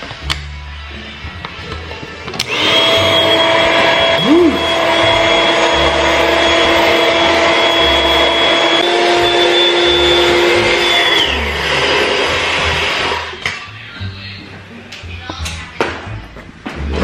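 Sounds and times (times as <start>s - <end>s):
electric air pump humming: 2.4s - 13.3s.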